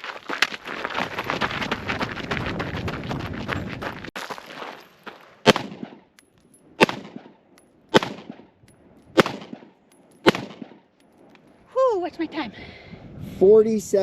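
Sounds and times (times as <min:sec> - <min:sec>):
single gunshots with echo: 0:05.4 - 0:06.1, 0:06.8 - 0:08.5, 0:09.2 - 0:10.9.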